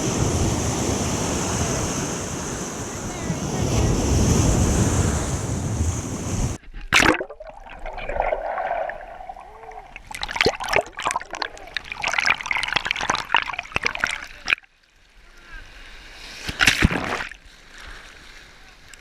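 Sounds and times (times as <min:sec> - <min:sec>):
water splashing and trickling: 0:05.0 - 0:14.6.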